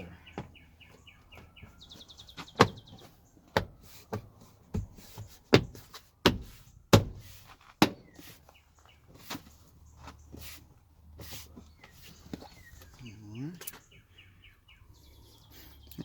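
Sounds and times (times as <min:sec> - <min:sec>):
bird chirping trill: 0:00.0 - 0:03.6, 0:07.8 - 0:10.4, 0:11.5 - 0:16.0.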